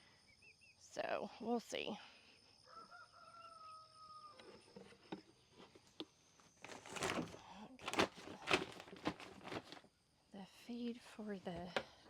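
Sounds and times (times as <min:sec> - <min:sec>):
rooster crowing: 0:02.7 - 0:04.4
rough scraping and rustling: 0:06.5 - 0:09.8.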